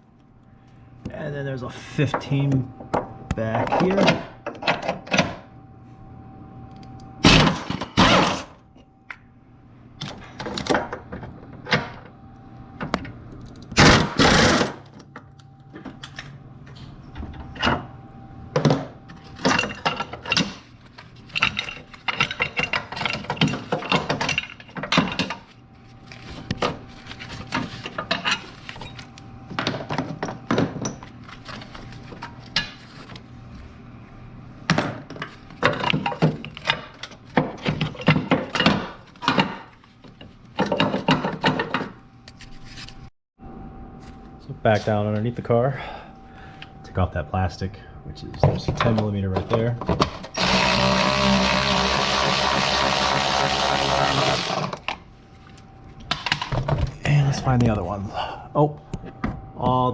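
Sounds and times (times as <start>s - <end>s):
loud wrench bursts: 13.8s - 14.8s, 50.3s - 54.9s.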